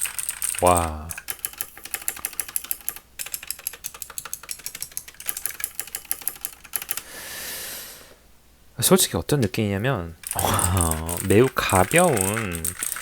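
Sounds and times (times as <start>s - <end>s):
clicky mechanical keyboard typing: 0.0s - 7.0s, 10.2s - 13.0s.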